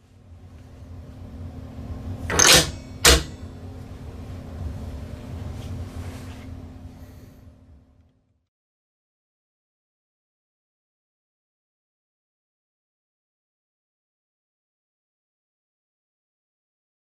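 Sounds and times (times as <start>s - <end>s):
steady low hum: 0.0s - 8.5s.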